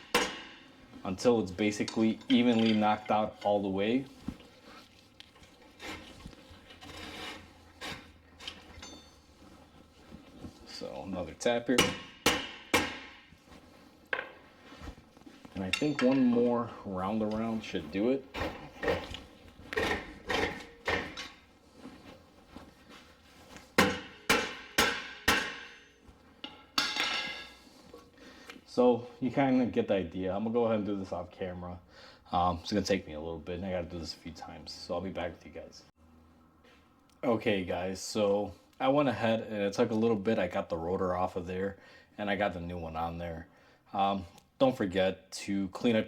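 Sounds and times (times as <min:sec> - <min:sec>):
metal scraping rasps: 0:05.4 - 0:09.4
metallic ring: 0:08.7 - 0:09.5, 0:15.7 - 0:16.5.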